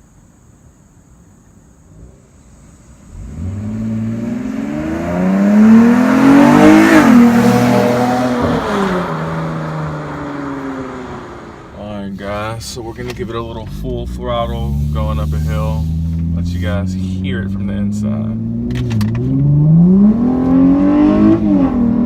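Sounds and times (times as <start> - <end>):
car accelerating past: 3.1 - 11.8, 14.4 - 22.0.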